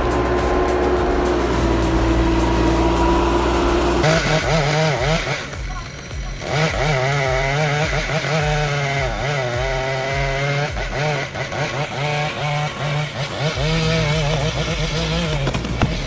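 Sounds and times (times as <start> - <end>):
background music with steady beat: 0.0 - 16.0
chainsaw cutting wood: 0.0 - 16.0.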